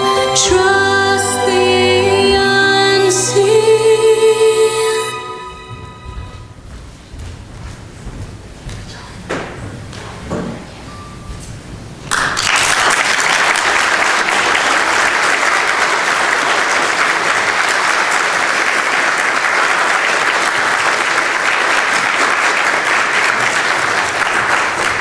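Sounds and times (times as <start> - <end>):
congregation applauding: 12.1 - 25.0.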